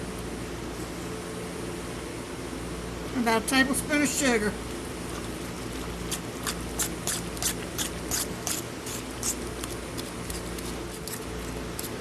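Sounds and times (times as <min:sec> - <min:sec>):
low background hum: 0:00.0 - 0:12.0
spoon scraping in a bowl: 0:06.1 - 0:09.4.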